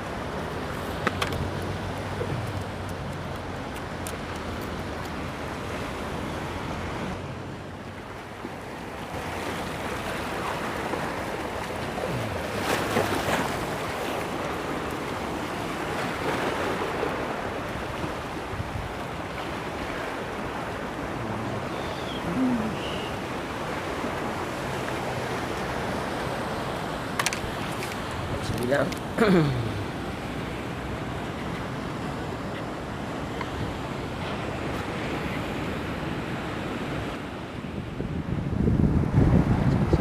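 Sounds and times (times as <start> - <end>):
sea waves breaking on shore: 0.0 - 40.0
wind on microphone: 9.2 - 28.6, 29.6 - 40.0.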